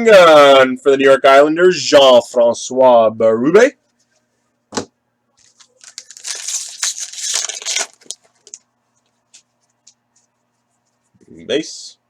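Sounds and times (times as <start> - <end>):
foil wrapper tearing and crinkling: 5.4 - 8.6.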